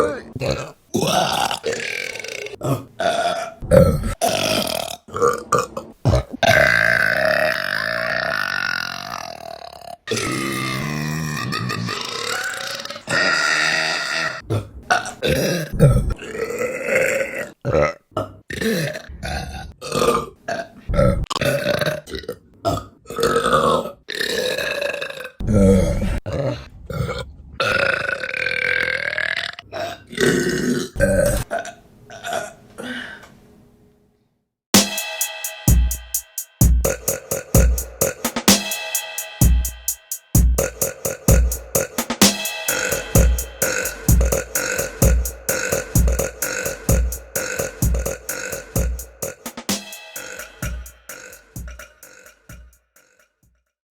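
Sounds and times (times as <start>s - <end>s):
electronic music with fast beat: 34.8s - 52.8s.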